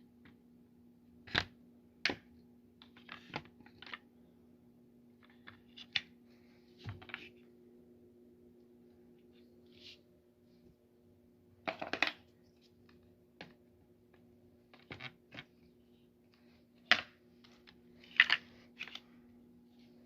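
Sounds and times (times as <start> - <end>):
steady low hum: 0.0 - 20.0
plastic parts clicking and knocking: 11.6 - 12.3.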